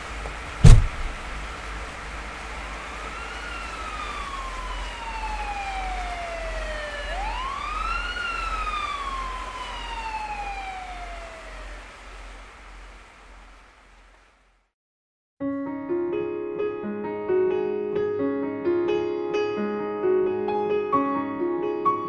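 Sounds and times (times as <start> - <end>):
low city rumble: 0.0 - 14.7
emergency siren wailing: 2.5 - 11.9.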